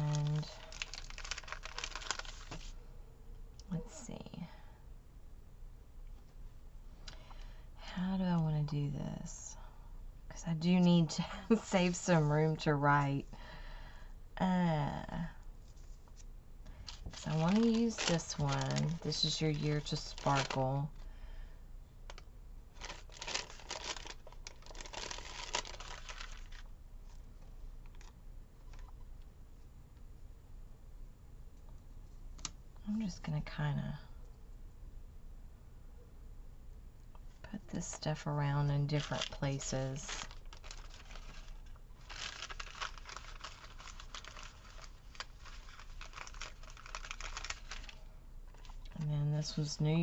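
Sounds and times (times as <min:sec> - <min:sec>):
paper sticker sheet crinkling: 0:00.0 - 0:02.7, 0:16.8 - 0:20.8, 0:22.8 - 0:27.2, 0:38.9 - 0:48.8.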